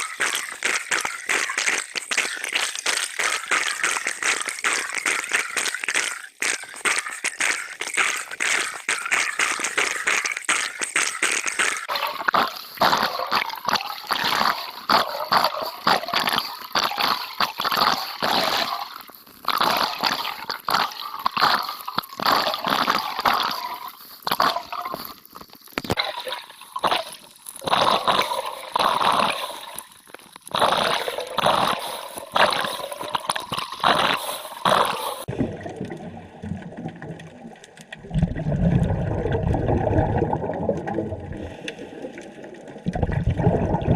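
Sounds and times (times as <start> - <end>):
underwater bubbles gurgling: 11.7 - 43.9.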